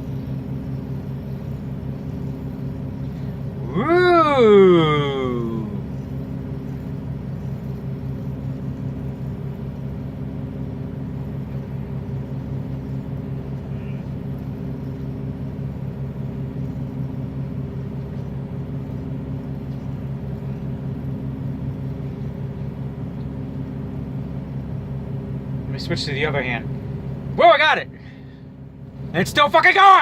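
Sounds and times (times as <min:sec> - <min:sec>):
vehicle engine droning: 0:00.0 - 0:30.0.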